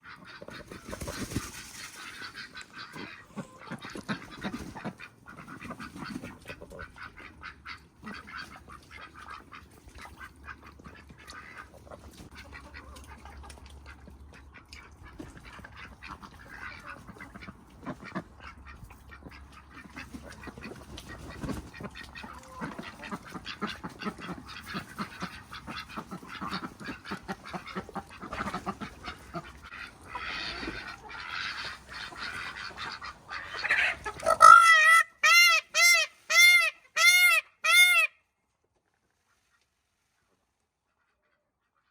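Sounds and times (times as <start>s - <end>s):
fowl quacking and honking: 0.0s - 38.2s.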